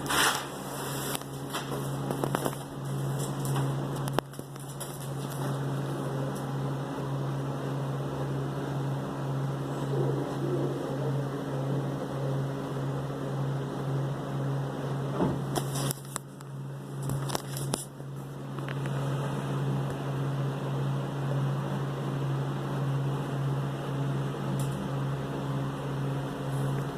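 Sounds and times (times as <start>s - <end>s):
low machine hum: 0.0s - 26.9s.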